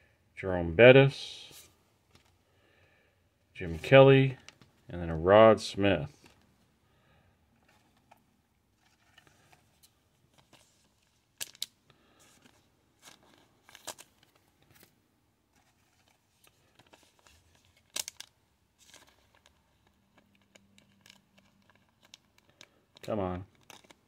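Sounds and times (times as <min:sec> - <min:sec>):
trading cards being handled: 0:03.7 - 0:06.7, 0:07.5 - 0:24.0
foil wrapper crinkling: 0:16.4 - 0:24.0
foil pack wrapper ripping: 0:17.8 - 0:24.0.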